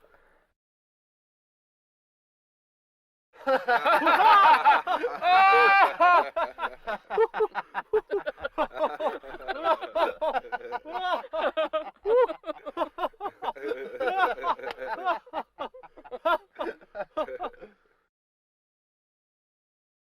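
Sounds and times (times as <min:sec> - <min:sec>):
men laughing together: 0:03.4 - 0:18.0.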